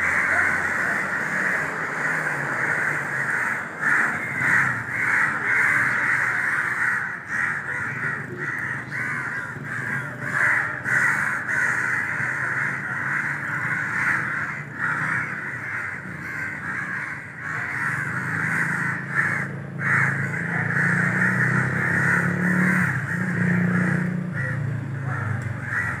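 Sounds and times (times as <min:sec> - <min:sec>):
crow cawing: 0:00.0 - 0:26.0.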